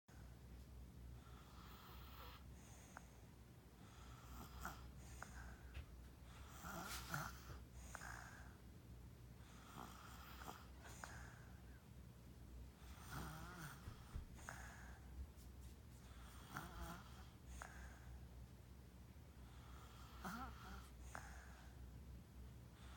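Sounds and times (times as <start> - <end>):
child snoring faintly: 3.8 - 8.6, 9.5 - 11.6, 12.8 - 15.0, 16.1 - 18.1, 19.5 - 21.8.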